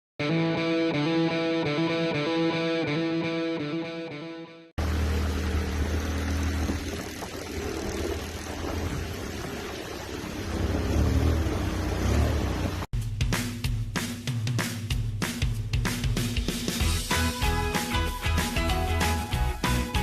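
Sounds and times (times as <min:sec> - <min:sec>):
atv engine running: 0:04.8 - 0:12.9
music with drums: 0:13.0 - 0:20.0.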